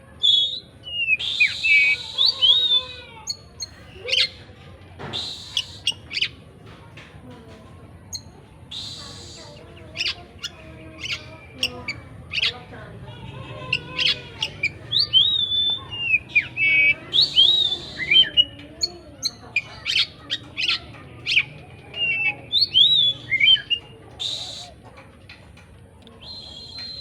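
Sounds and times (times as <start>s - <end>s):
bird singing chirps and whistles: 0.2s - 4.4s, 5.1s - 6.4s, 8.2s - 12.5s, 13.8s - 18.6s, 19.2s - 24.7s, 26.2s - 27.0s
harsh raspy bird notes: 0.2s - 4.5s, 5.1s - 6.4s, 8.1s - 24.8s.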